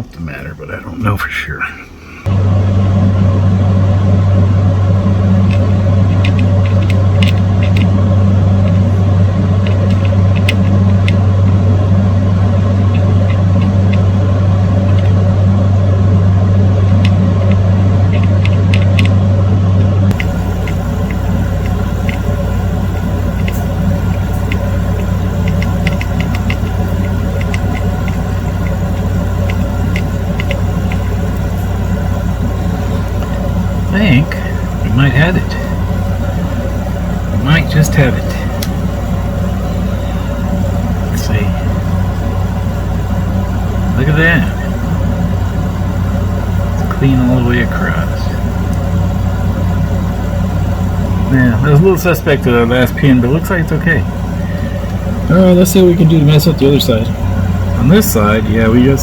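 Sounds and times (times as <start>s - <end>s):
loud low hum: 1.8s - 59.0s
small ticks and crackles: 20.1s - 35.0s.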